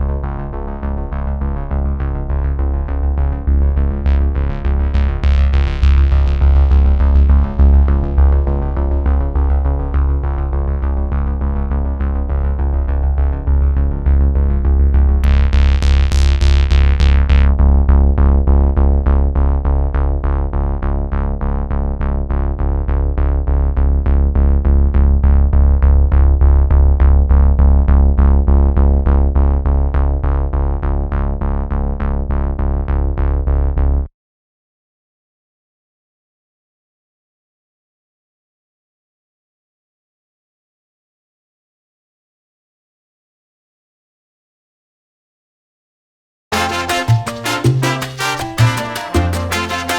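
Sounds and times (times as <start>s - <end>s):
electronic music with deep bass: 0.0s - 20.6s, 46.5s - 49.9s.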